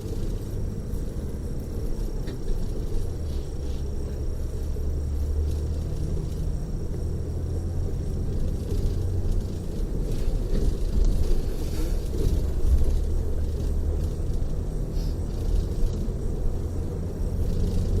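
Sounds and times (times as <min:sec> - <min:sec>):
coach engine and road noise: 0:00.0 - 0:18.0.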